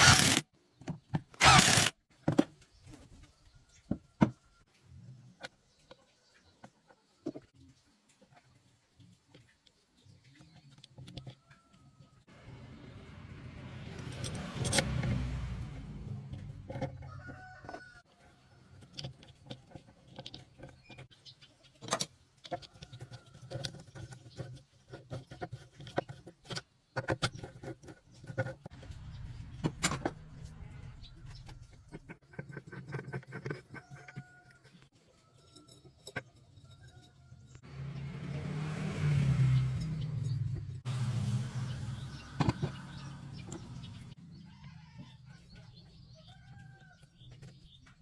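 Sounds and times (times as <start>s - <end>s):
low hum: 28.8s - 32.1s.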